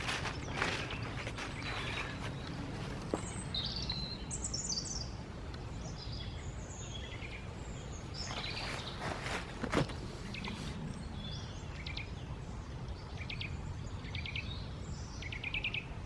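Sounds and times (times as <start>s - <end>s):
soft rustles: 0.0s - 3.7s, 8.1s - 11.0s
birds chirping and trilling: 0.0s - 16.0s.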